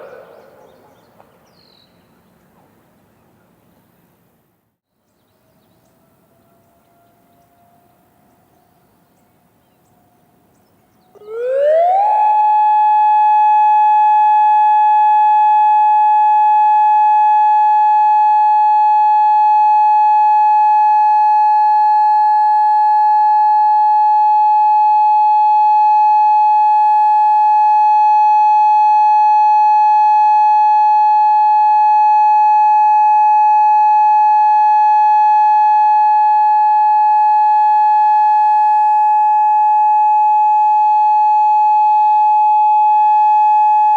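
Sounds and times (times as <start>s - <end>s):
electronic warning siren: 0.0s - 0.2s, 11.2s - 43.9s.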